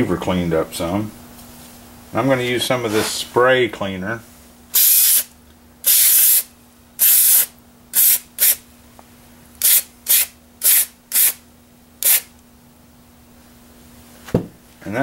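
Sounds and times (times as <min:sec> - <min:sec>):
aerosol spray hissing: 0:09.6 - 0:11.4.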